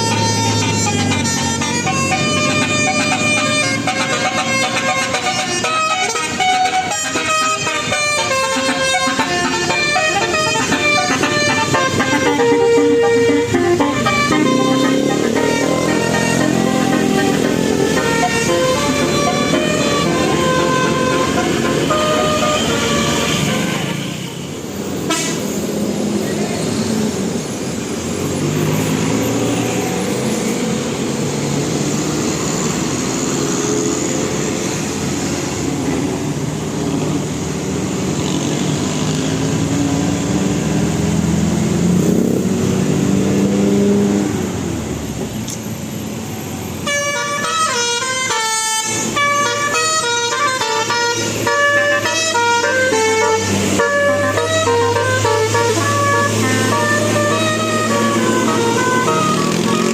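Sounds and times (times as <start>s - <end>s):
musical bus horn: 0.0s - 26.0s, 46.8s - 59.9s
street noise: 0.0s - 59.9s.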